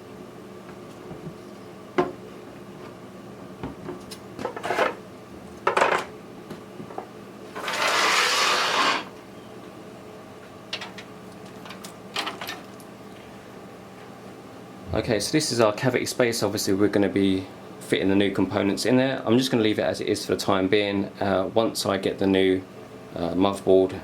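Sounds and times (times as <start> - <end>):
rustling scrape: 4.5 - 5.0, 7.5 - 9.1.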